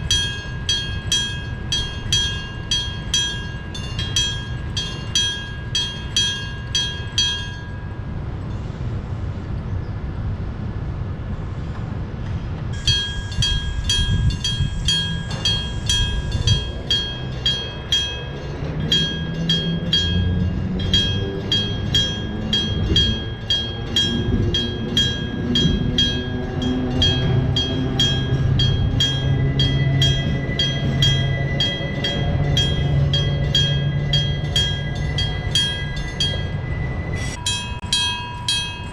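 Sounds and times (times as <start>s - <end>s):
level crossing bell ringing: 0.0s - 8.2s, 12.8s - 38.9s
train rumble: 0.0s - 38.9s.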